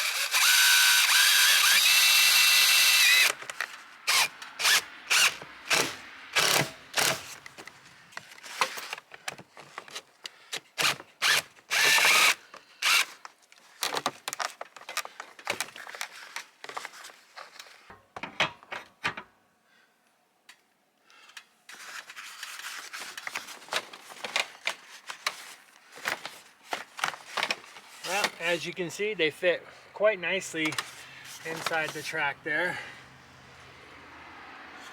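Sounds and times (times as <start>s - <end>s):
power drill driving screws: 0.0s - 3.5s, 4.1s - 7.4s, 10.8s - 13.2s.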